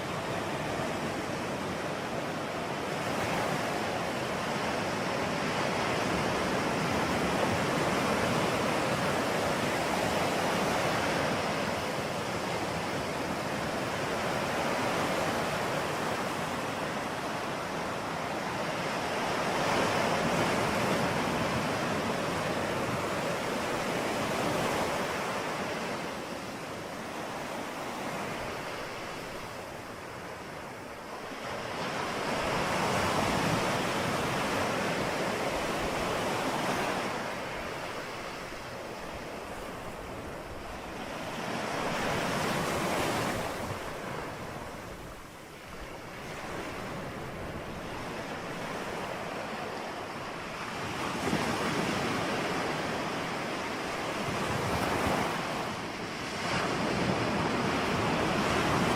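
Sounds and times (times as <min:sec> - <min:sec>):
ocean waves breaking: 0:00.0 - 0:58.9.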